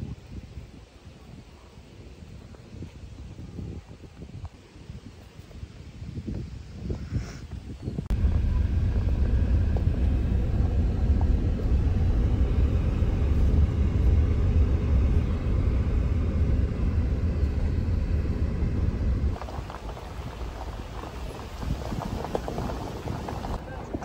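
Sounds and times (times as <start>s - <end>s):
loud low rumble: 8.1s - 23.8s.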